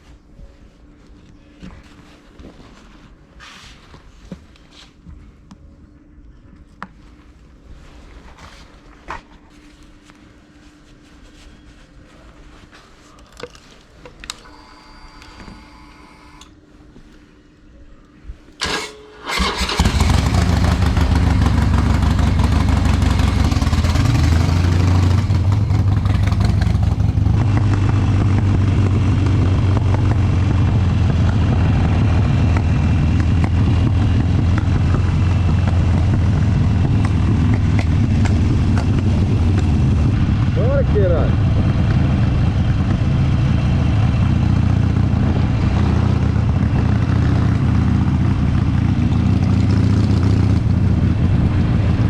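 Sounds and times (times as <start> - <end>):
motorcycle engine cranking: 18.6 - 24.0
motorcycle engine idling: 18.6 - 52.0.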